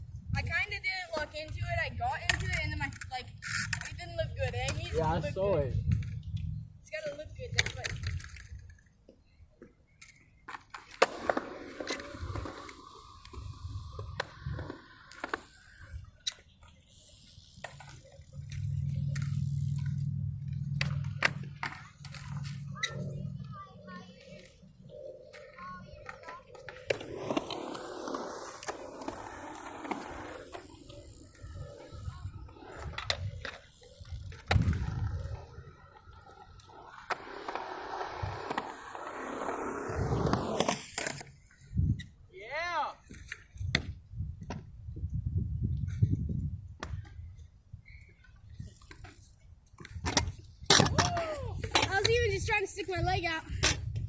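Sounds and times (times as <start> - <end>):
skateboard wheels rumbling: 0.0 - 9.0, 10.0 - 42.3, 43.1 - 54.0
skateboard clicks and knocks: 0.6 - 5.0, 7.1 - 41.5, 47.8 - 52.6
skateboard clacks: 20.6 - 41.3.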